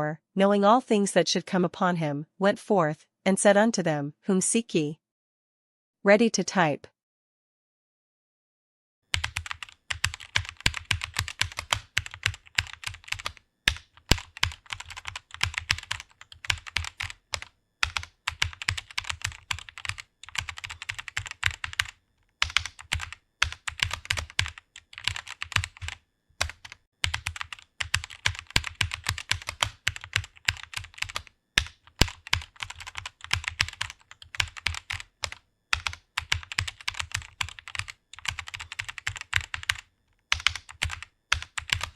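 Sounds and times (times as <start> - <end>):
fast typing on computer keyboard: 9.1 - 41.9.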